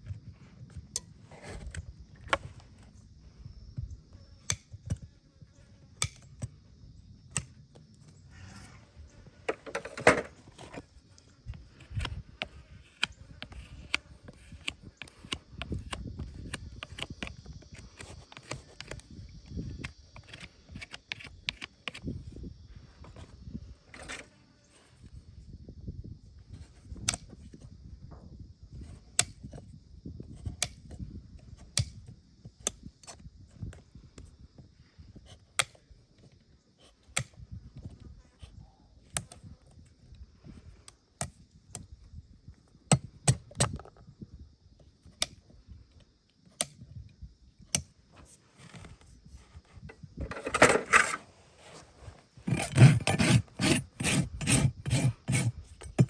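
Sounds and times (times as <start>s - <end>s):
rasp filing hoof: 50.2s - 56.0s.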